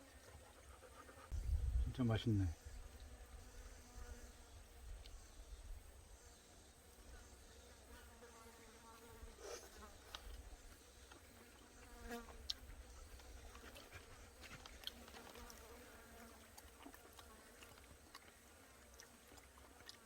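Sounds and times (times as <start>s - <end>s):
flying insect buzzing: 2.5s - 12.8s.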